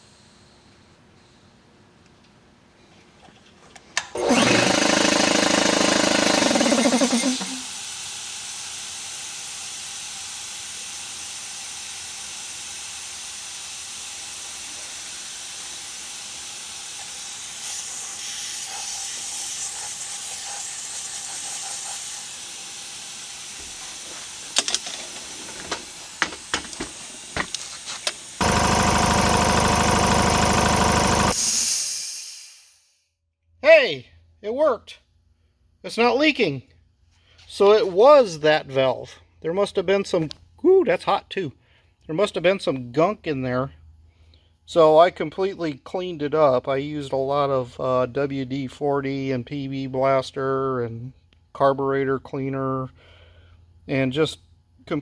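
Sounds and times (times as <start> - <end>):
air compressor running: 4.2 - 18.5, 22.3 - 32.9
air hiss: 31.4 - 32.8.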